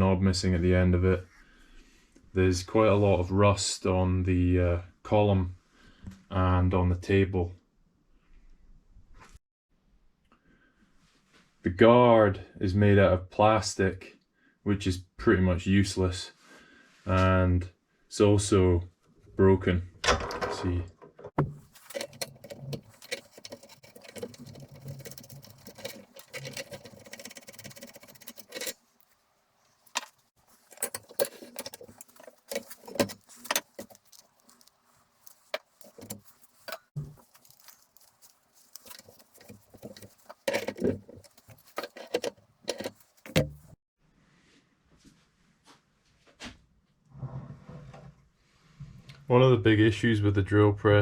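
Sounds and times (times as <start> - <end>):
clicks and knocks: 20.1 - 29.2, 29.8 - 43.8
light rattles of handled parts: 21.4 - 43.8.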